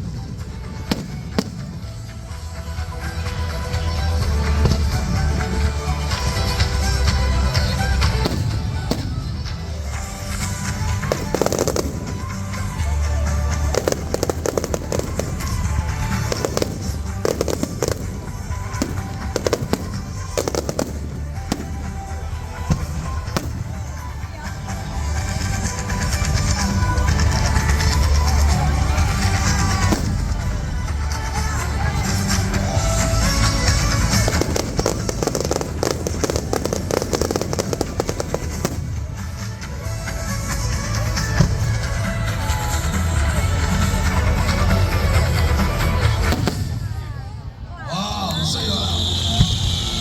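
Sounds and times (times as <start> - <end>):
fireworks bangs and crackles: 0.0 - 50.0
music playing: 0.0 - 50.0.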